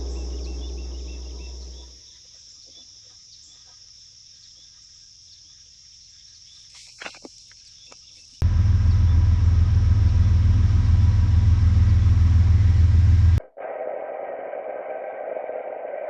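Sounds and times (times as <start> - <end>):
low gong-like tone: 0.0 - 1.9, 8.4 - 13.4
crickets and insects chirring: 0.0 - 9.3.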